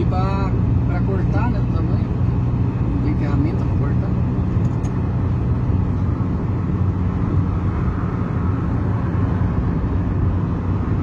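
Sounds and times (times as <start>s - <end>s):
road noise: 0.0s - 11.0s.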